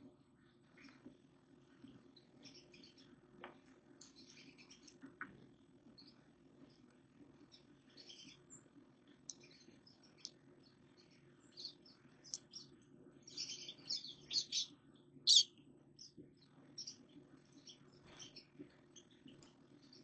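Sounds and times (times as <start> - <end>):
steady low hum: 0.0 - 20.0
small birds chirping: 0.3 - 20.0.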